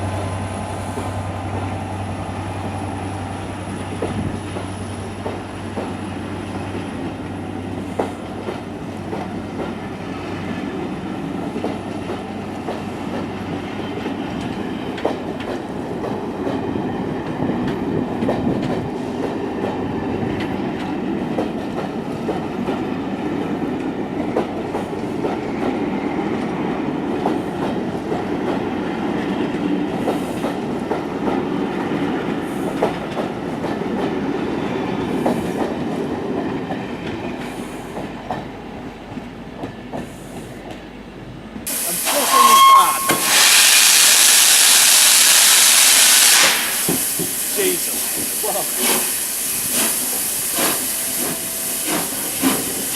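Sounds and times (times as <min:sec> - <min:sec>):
train rolling by: 0:00.0 - 0:52.9.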